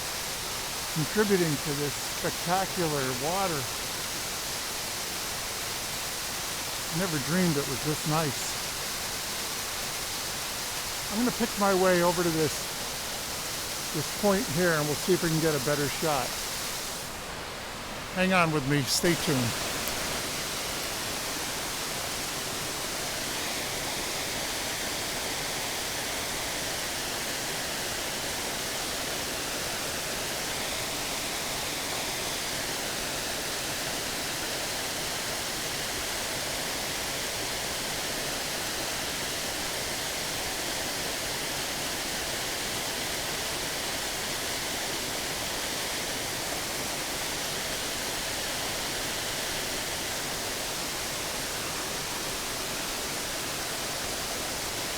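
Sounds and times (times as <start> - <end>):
waterfall rushing: 0.0 - 54.9.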